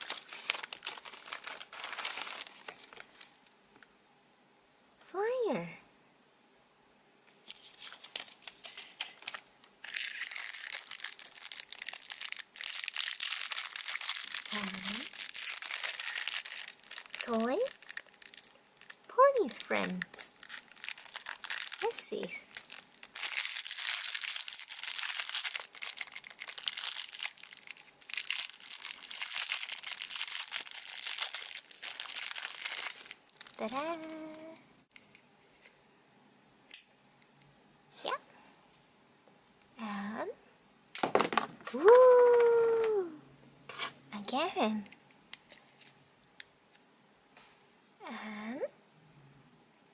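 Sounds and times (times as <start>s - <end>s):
plastic packaging crinkling: 0.0s - 3.4s, 7.4s - 34.6s.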